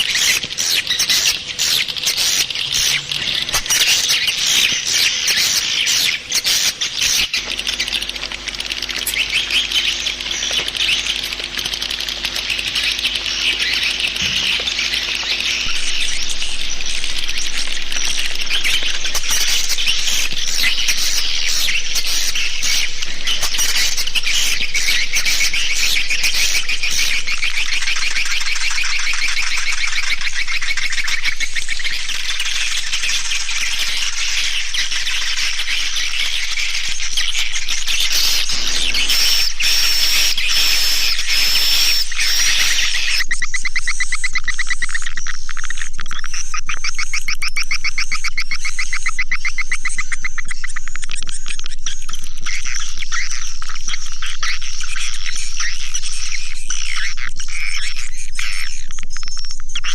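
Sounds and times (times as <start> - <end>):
swiftlets twittering: 0.0 - 59.5
high whistle-like tone: 14.2 - 43.3.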